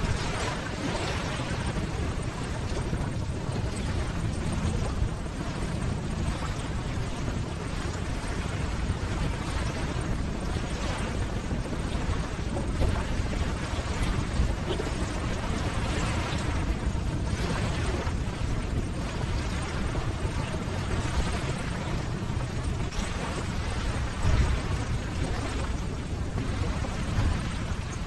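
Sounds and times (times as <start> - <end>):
ocean surf waves breaking: 0.0 - 28.0.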